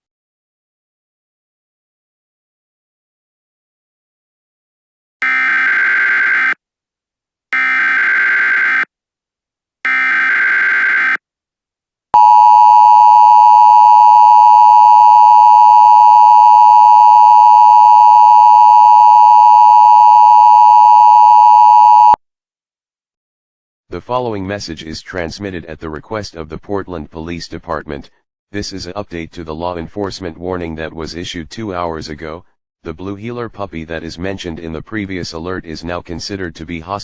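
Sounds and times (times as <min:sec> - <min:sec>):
two-tone attention signal: 0:12.2 - 0:22.2.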